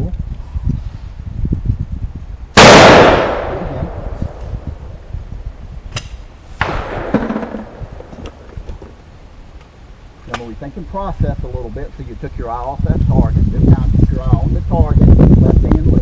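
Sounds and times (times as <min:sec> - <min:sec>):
shotgun shot: 0:02.6 - 0:04.6, 0:05.9 - 0:08.1
sharp click: 0:05.9 - 0:06.2.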